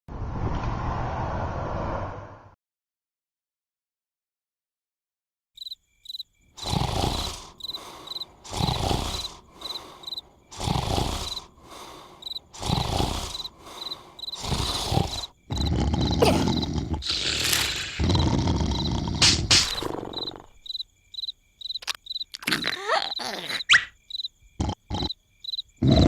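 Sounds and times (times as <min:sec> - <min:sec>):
crickets chirping: 0:05.6 - 0:26.0
cartoon snoring: 0:06.6 - 0:20.6, 0:22.4 - 0:23.9, 0:24.6 - 0:25.2, 0:25.8 - 0:26.0.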